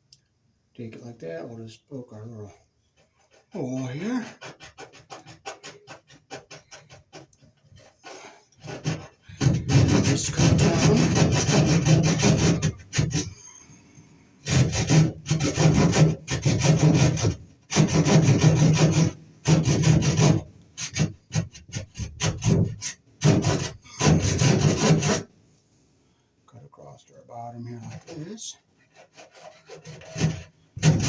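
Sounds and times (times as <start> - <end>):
hand saw rasping through wall: 3.0 - 13.5, 14.4 - 25.3, 27.6 - 31.0.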